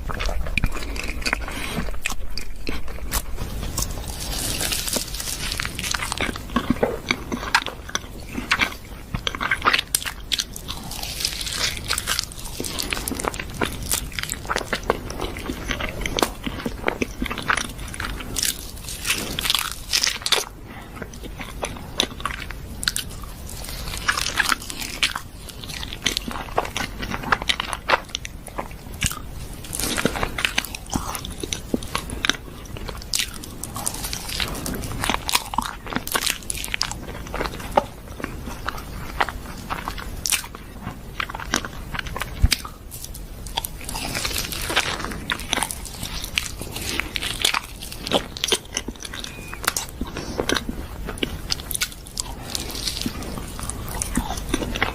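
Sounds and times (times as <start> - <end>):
crunchy bites and wet chewing: 0.0 - 54.9.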